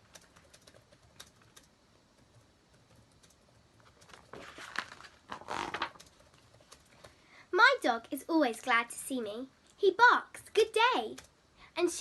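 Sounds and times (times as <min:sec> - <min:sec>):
book page turning rustle: 0:03.9 - 0:06.0.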